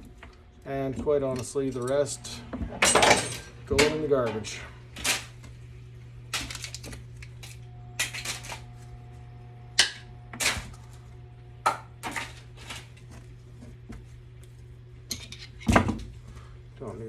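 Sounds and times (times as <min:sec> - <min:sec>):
steady low hum: 0:00.0 - 0:17.0
small parts clattering: 0:06.3 - 0:08.8, 0:11.7 - 0:13.2.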